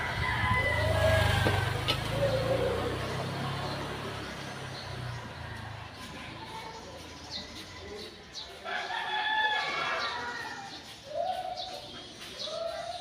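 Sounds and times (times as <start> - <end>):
rooster crowing: 0.0 - 2.0, 8.7 - 10.6.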